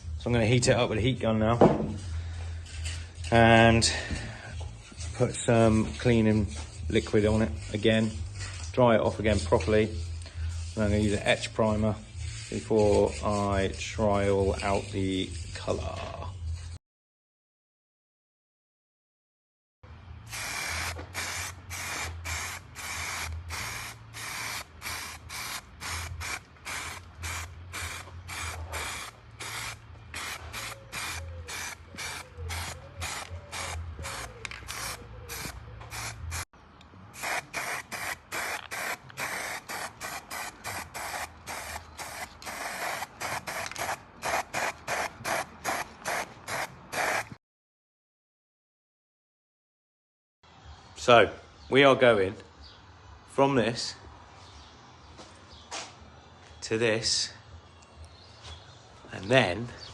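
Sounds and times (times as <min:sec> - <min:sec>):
aerosol spray hissing bursts: 0:20.3 - 0:36.4, 0:37.2 - 0:47.3.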